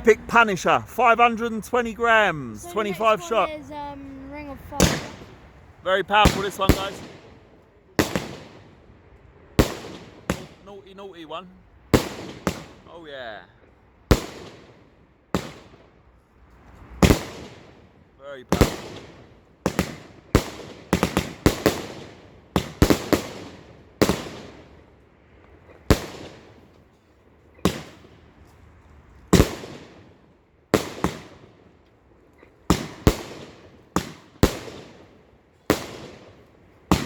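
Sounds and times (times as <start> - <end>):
firework cake bangs: 32.7 - 35.1, 35.7 - 37.0.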